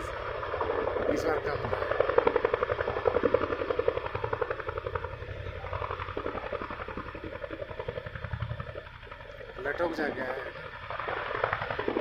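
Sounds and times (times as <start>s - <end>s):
helicopter rotors chopping: 0.0s - 12.0s.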